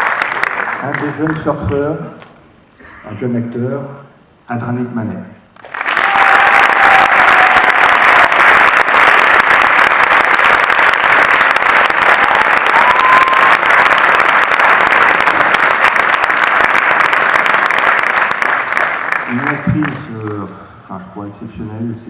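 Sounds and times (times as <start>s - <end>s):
audience applauding: 0.0s - 1.6s, 5.6s - 20.4s.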